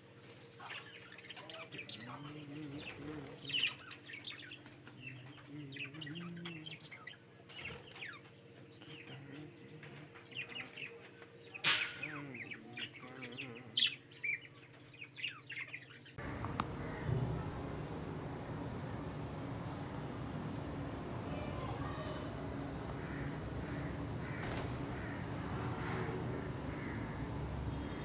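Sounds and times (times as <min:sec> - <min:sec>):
birds chirping: 0:00.0 - 0:28.0
low wavering coos: 0:11.9 - 0:14.2
steady noisy background: 0:16.2 - 0:28.0.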